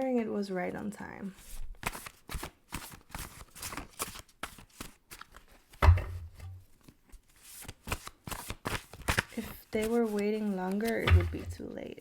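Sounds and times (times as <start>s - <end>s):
cards being shuffled: 1.4s - 11.5s
thump: 5.8s - 6.5s, 11.1s - 11.6s.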